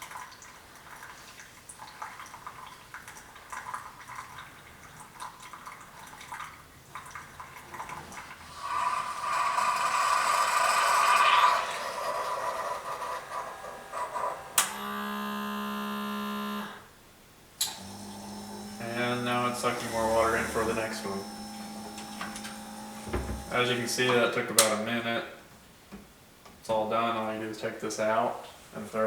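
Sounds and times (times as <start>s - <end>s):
coffee trickling into cup: 0.1s - 14.6s, 17.8s - 24.2s
coffee brewer hissing: 8.4s - 16.8s, 17.6s - 24.8s
pump hum: 8.4s - 16.9s, 17.6s - 24.5s.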